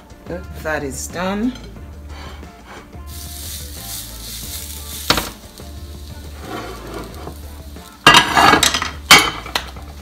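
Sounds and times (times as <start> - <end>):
food sizzling on a grill: 2.1 - 10.0.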